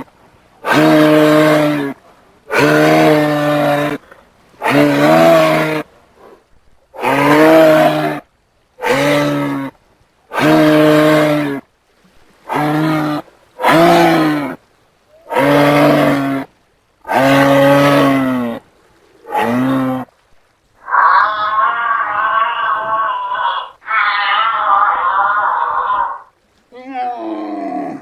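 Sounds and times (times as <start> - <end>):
giraffe low bellows: 0.6 - 4.0, 4.6 - 5.9, 7.0 - 8.2, 8.8 - 9.7, 10.3 - 11.6, 12.5 - 16.5, 17.1 - 18.6, 19.2 - 20.1, 20.8 - 26.3, 27.0 - 28.0.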